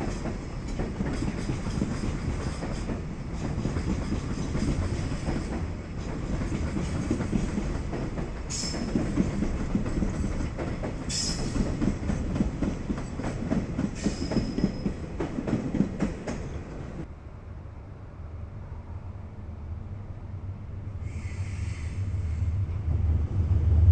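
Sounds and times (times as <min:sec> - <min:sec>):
train wheels clattering over rails: 0:00.0 - 0:17.1.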